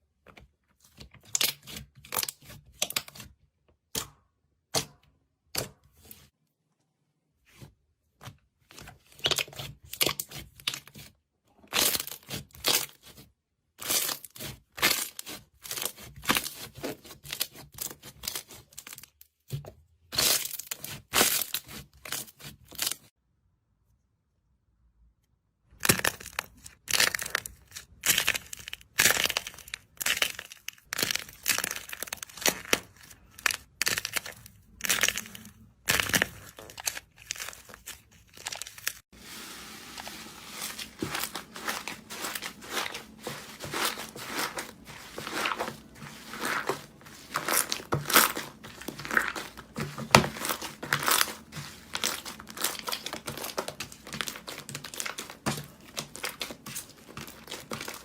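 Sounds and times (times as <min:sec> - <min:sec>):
slime squishing and crackling: 0:00.9 - 0:04.1, 0:08.7 - 0:19.2, 0:25.8 - 0:58.0.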